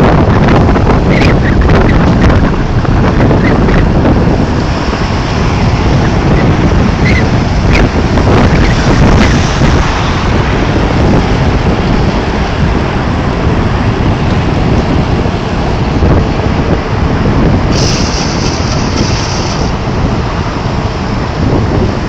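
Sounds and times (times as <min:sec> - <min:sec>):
wind hiss: 0:00.0 - 0:22.0
wind rumbling on microphone: 0:00.0 - 0:22.0.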